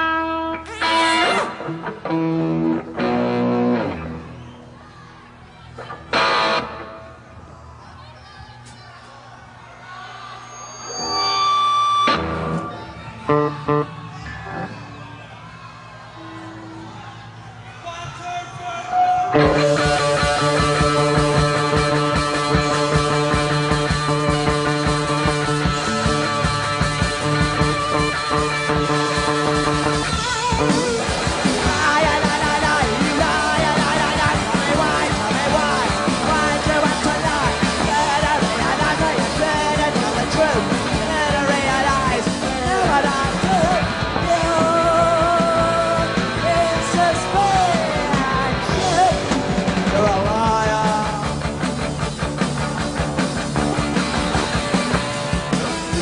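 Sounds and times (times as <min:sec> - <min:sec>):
electric guitar: 0:00.0 - 0:04.5, 0:05.8 - 0:07.3, 0:10.9 - 0:15.0, 0:19.3 - 0:56.0
bass guitar: 0:00.0 - 0:04.8, 0:05.5 - 0:07.5, 0:11.9 - 0:16.8, 0:19.3 - 0:56.0
drums: 0:00.0 - 0:56.0
shouted lead vocal: 0:30.0 - 0:51.6.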